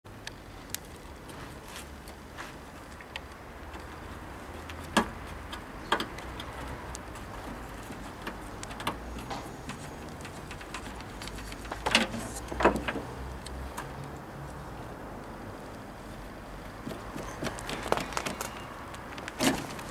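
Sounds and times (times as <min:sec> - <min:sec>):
hand tools clicking on metal: 0:03.1 - 0:14.2.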